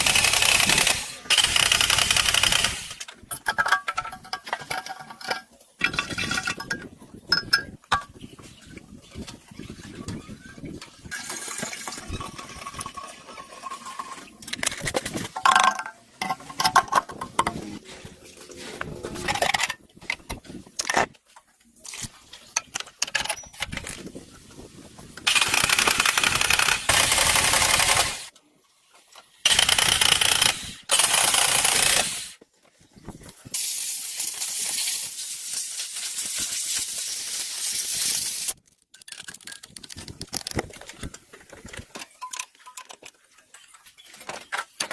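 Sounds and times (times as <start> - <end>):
metal tools clinking: 3.1 - 8.2
hissing spray: 33.5 - 38.6.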